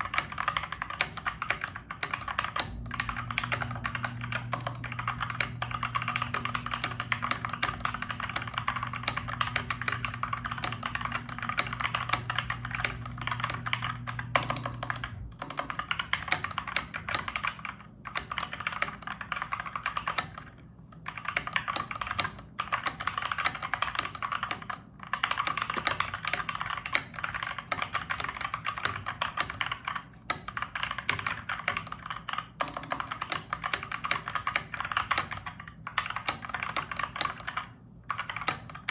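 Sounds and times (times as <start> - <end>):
mechanical keyboard typing: 0.0 - 38.9.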